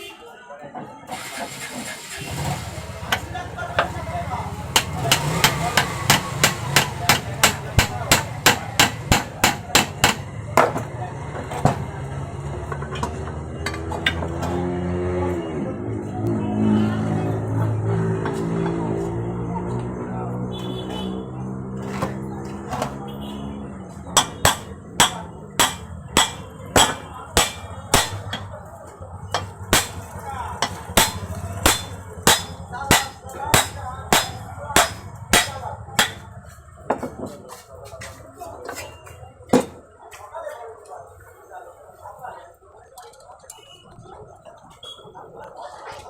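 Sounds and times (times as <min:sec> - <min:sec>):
hammer blows: 0:04.6 - 0:10.9, 0:24.1 - 0:28.6, 0:29.3 - 0:36.4.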